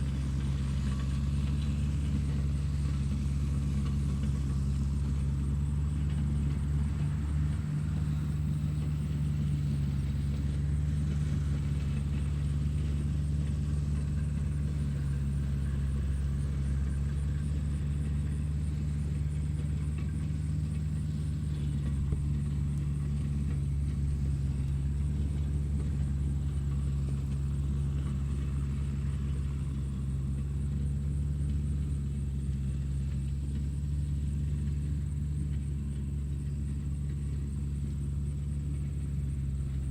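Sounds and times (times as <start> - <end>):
tractor engine rumbling: 0.0 - 39.9.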